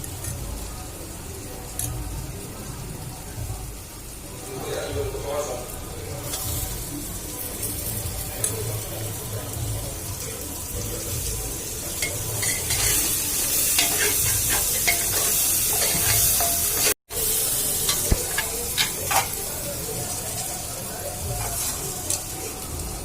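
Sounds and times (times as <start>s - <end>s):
food sizzling in hot oil: 0.0s - 23.0s
spoon scraping metal pot: 13.8s - 16.9s.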